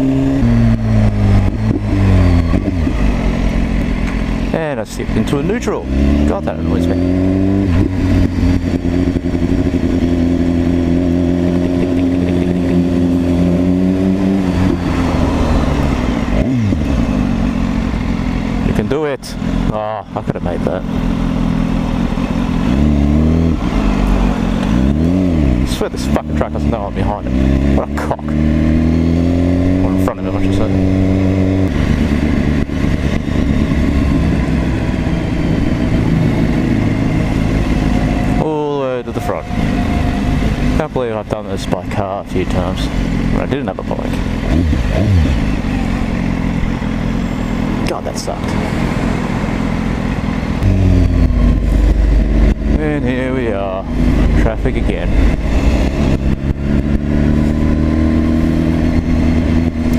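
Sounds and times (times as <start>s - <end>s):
motorcycle engine running: 0.0s - 59.9s
wind rush: 53.8s - 59.9s.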